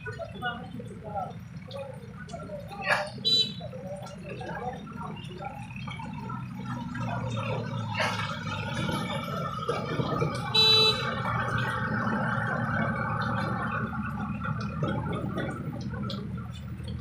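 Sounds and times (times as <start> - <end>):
vehicle horn honk: 3.2 - 3.7, 10.5 - 11.3.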